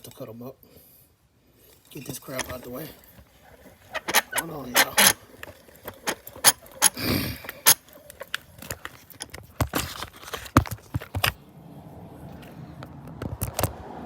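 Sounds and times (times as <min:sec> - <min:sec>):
metallic clicks and clanks of tools: 0:02.4 - 0:02.8, 0:03.6 - 0:09.4.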